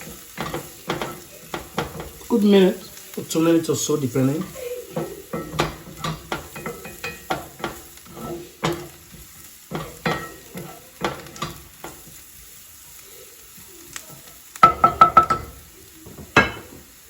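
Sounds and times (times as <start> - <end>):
utensil scraping and knocking pan: 0.0 - 2.3, 4.4 - 12.2
food sizzling in oil: 0.0 - 17.0.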